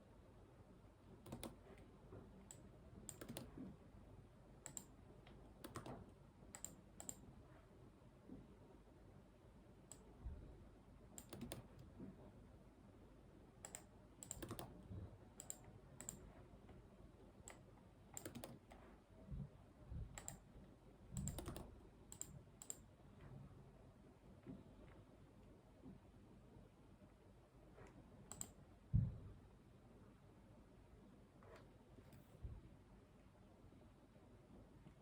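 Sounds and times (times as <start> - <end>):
keyboard keystrokes: 1.2 - 1.6, 2.5 - 3.5, 4.7 - 4.9, 5.6 - 6.0, 11.2 - 11.8, 13.6 - 14.7, 18.2 - 18.6, 21.2 - 22.8.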